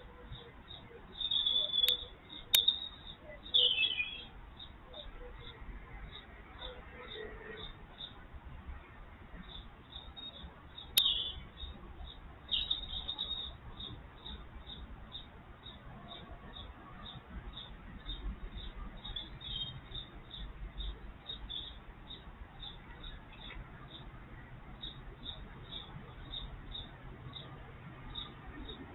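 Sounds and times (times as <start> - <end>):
small bird chirping: 0.2 - 8.2, 9.4 - 24.1.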